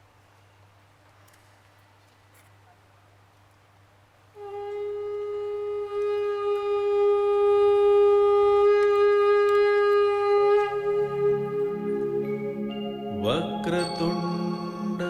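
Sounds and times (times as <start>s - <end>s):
conch shell blown: 4.3s - 15.0s
music: 4.4s - 15.0s.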